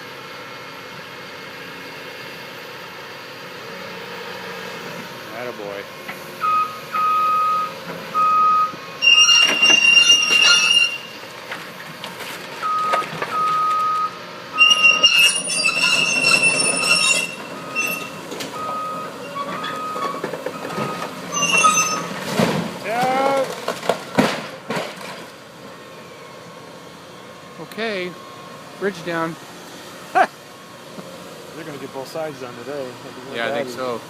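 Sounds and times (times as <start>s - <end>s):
structure screeching and crashing: 5.3s - 25.4s
backup alarm beeping: 6.4s - 11.0s.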